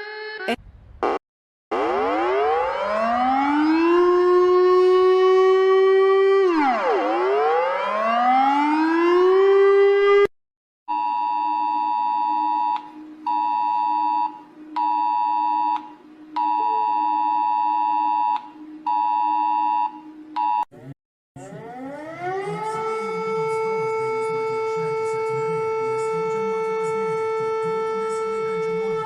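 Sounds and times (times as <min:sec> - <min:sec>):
siren wailing: 0:01.7 - 0:10.3, 0:21.4 - 0:29.0.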